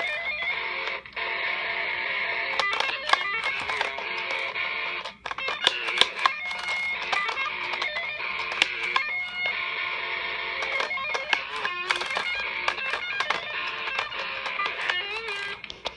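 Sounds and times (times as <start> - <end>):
sharp clicks: 2.4 - 9.6, 10.4 - 15.9
plucked guitar-like music: 2.5 - 9.8, 10.5 - 15.7.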